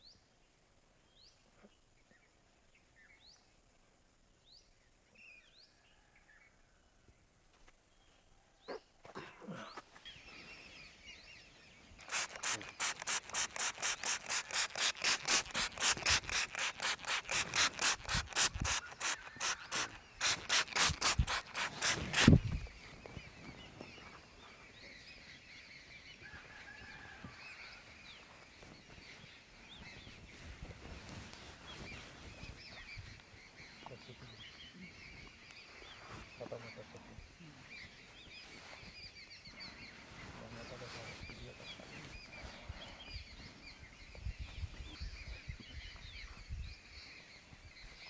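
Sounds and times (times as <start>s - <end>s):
hands rubbing over hair and skin: 12.0s - 22.7s.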